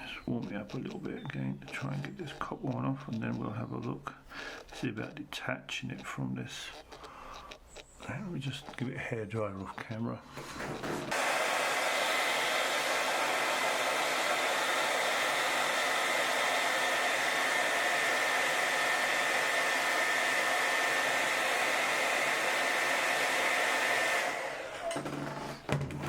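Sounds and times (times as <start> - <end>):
hair dryer running: 10.6 - 25.8.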